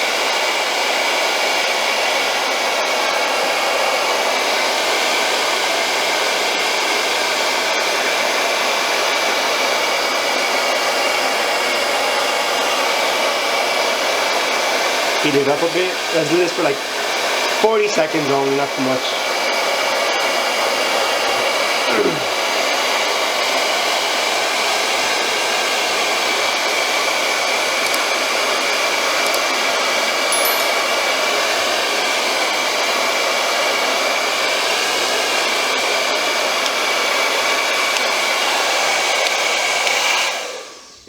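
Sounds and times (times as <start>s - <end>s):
blow dryer running: 0.0s - 41.0s.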